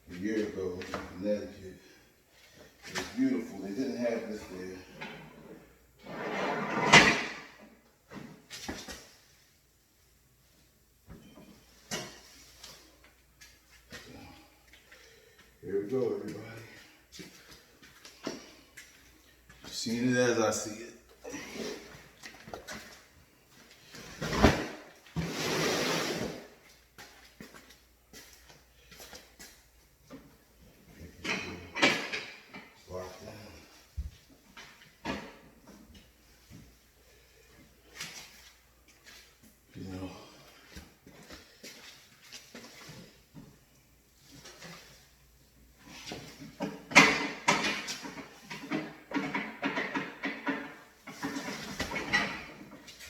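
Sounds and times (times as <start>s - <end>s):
scraping or sliding: 6.0s - 7.4s, 24.2s - 26.5s.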